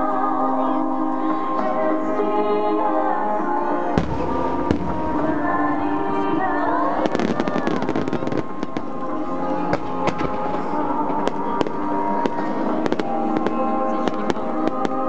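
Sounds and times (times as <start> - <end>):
music playing: 0.0 - 15.0
fireworks bursting and crackling: 4.0 - 5.9, 6.5 - 15.0.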